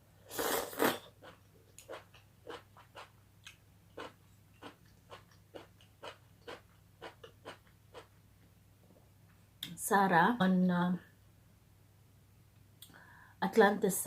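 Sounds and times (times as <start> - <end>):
chewing chicken bones crunching: 1.2 - 8.1.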